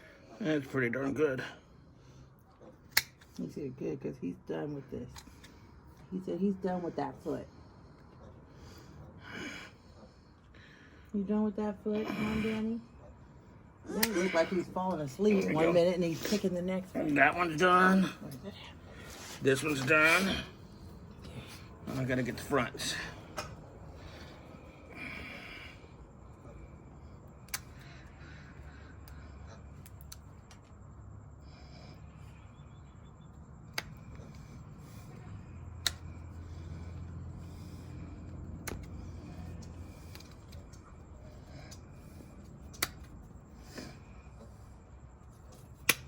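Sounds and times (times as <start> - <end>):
hoof shears snapping: 2.9 - 3.4, 14.0 - 14.2, 42.7 - 43.2, 45.8 - 46.0.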